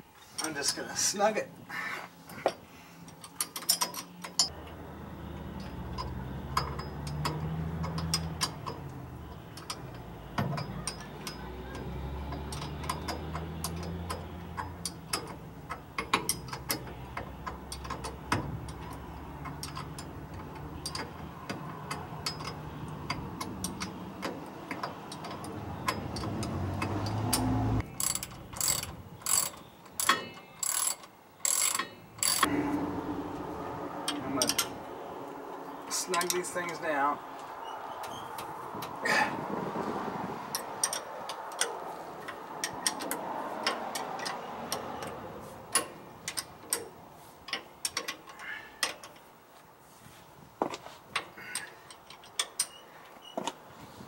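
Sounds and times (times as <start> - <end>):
hand ratchet clicking: 5.6 - 32.5, 40.5 - 49.3.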